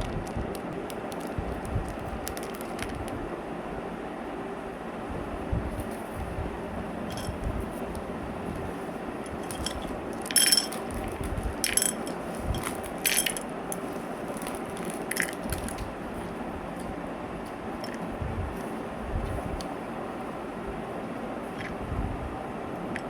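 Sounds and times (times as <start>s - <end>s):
wrapper crinkling: 0.0s - 3.2s, 9.3s - 16.3s
steady background hum: 0.0s - 23.0s.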